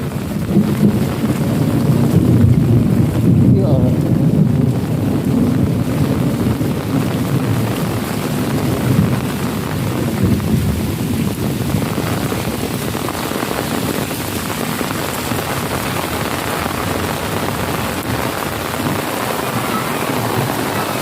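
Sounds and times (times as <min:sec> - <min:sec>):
heavy rain pouring: 0:00.0 - 0:21.0.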